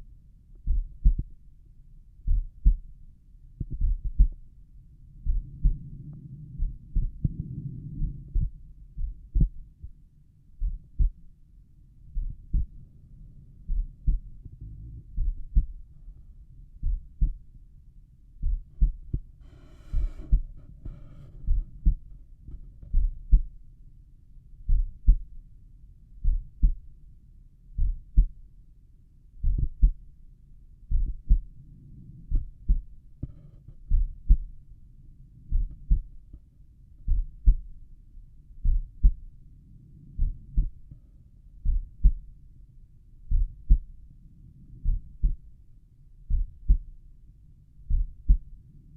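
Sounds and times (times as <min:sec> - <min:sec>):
heartbeat thumps: 0:00.6 - 0:01.4, 0:02.2 - 0:11.4, 0:12.1 - 0:12.9, 0:13.6 - 0:16.2, 0:16.8 - 0:17.5, 0:18.3 - 0:23.6, 0:24.6 - 0:25.4, 0:26.2 - 0:26.9, 0:27.8 - 0:28.4, 0:29.4 - 0:30.1, 0:30.8 - 0:31.6, 0:32.3 - 0:34.6, 0:35.5 - 0:36.4, 0:37.0 - 0:37.8, 0:38.6 - 0:39.3, 0:40.1 - 0:41.0, 0:41.6 - 0:42.4, 0:43.2 - 0:44.0, 0:44.8 - 0:45.6, 0:46.2 - 0:47.1, 0:47.8 - 0:48.6
stomach rumble: 0:05.2 - 0:10.0, 0:13.7 - 0:16.2, 0:18.4 - 0:23.5, 0:30.9 - 0:34.6.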